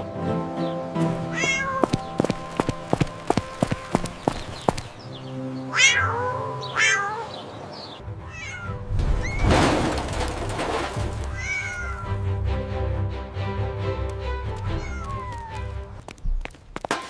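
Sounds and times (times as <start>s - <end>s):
background music: 0.0s - 16.0s
cat meowing: 1.3s - 2.2s, 5.7s - 7.4s, 8.3s - 9.4s, 11.4s - 12.2s, 14.6s - 15.7s.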